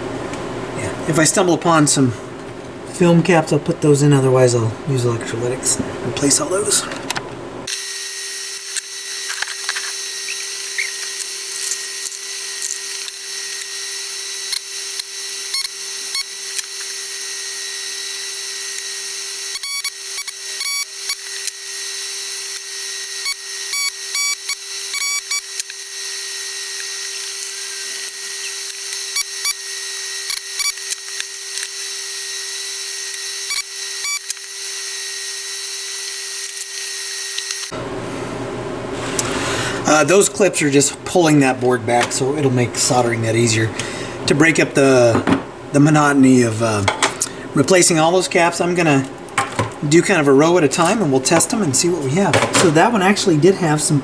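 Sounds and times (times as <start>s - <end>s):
small motor whine: 7.7s - 37.9s
tools clicking on circuit board: 18.7s - 37.7s.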